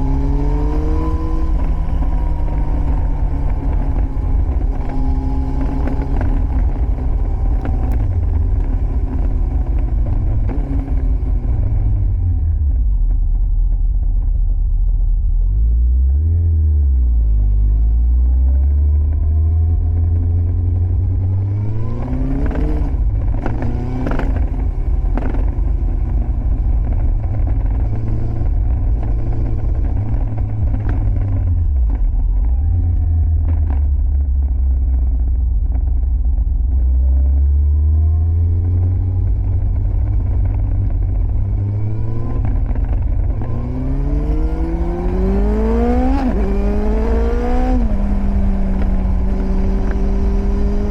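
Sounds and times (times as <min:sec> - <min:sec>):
motorcycle engine revving: 0:00.0 - 0:13.1, 0:15.9 - 0:50.9
exhaust pops: 0:19.1 - 0:37.3, 0:38.4 - 0:50.9.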